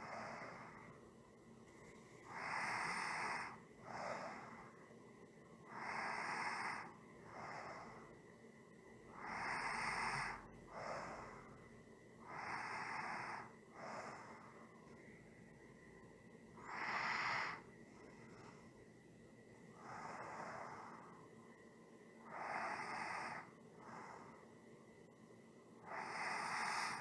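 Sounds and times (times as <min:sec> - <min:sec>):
person breathing slowly: 0:00.0 - 0:01.0, 0:01.8 - 0:04.9, 0:05.6 - 0:08.2, 0:09.1 - 0:15.3, 0:16.6 - 0:18.9, 0:19.7 - 0:21.3, 0:22.2 - 0:24.7, 0:25.8 - 0:27.0.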